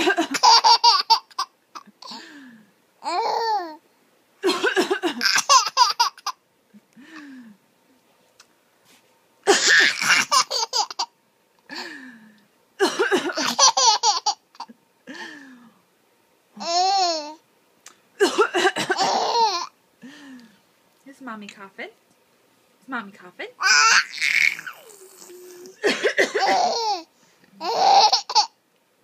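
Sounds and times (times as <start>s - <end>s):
baby giggling: 0.0s - 2.0s, 4.6s - 6.4s, 9.5s - 11.1s, 13.3s - 14.7s, 16.6s - 17.4s, 18.9s - 19.7s, 23.6s - 28.6s
woman coughing: 4.4s - 5.5s, 9.4s - 10.4s, 12.8s - 13.6s, 18.2s - 19.4s, 25.8s - 26.8s.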